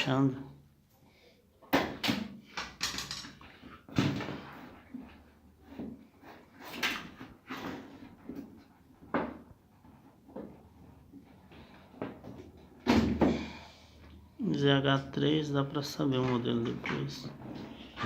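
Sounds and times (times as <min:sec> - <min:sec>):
parts knocking and clattering: 0:01.7 - 0:04.6.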